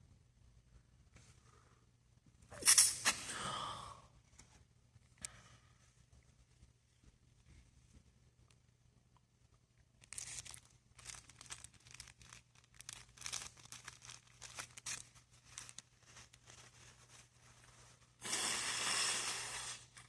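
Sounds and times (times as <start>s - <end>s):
crinkling and crackling: 4.3s - 18.2s.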